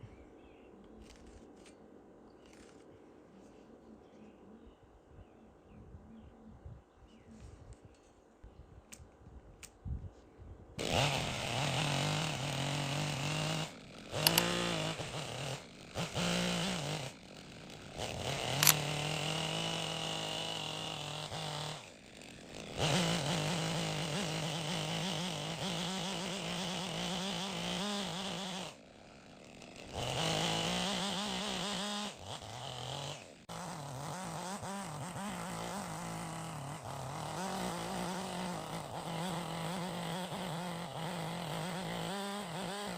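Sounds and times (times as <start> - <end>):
chainsaw running at high revs: 10.8 - 42.9
sharp click: 14.2 - 14.6, 18.6 - 18.9.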